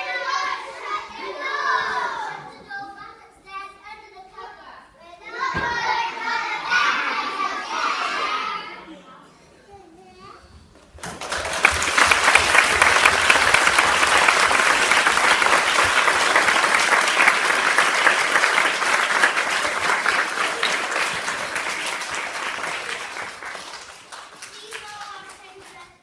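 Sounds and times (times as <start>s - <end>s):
audience applauding: 11.0s - 26.0s.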